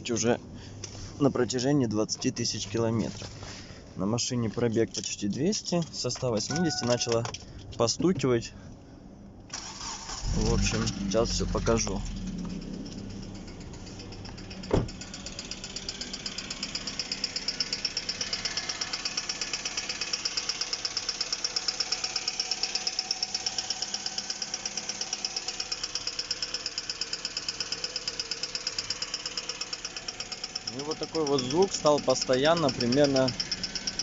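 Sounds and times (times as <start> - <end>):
engine running with rattling knock: 10.2 - 34.0
sharp thump: 14.6 - 15.0.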